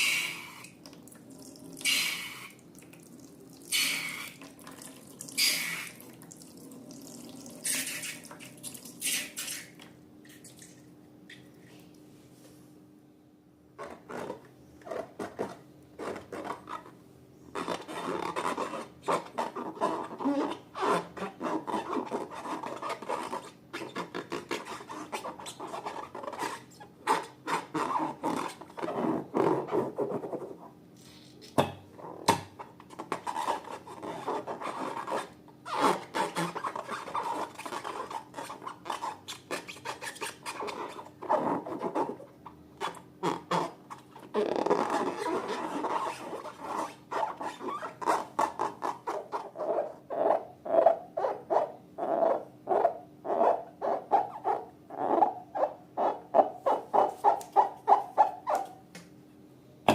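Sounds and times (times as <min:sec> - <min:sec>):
slime rubbing and scraping: 0:13.8 - 0:17.0, 0:33.0 - 0:51.5, 0:55.2 - 0:58.7.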